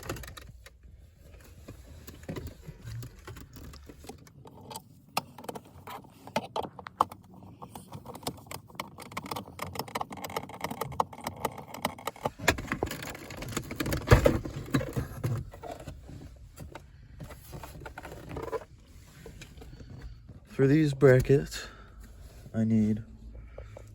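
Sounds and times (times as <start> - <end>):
plastic trim clicking and rattling: 1.4 - 18.7.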